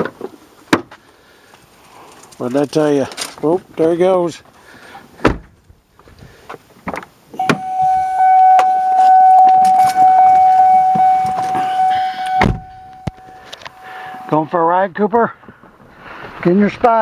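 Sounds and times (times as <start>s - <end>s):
thump: 5.2s - 5.6s, 12.4s - 12.8s
car warning chime pulsing: 7.4s - 14.6s.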